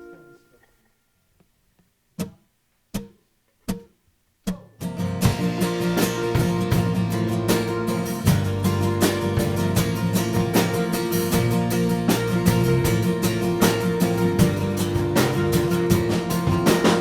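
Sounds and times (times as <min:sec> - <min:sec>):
live band playing guitar-led music: 0:04.8 - 0:17.0.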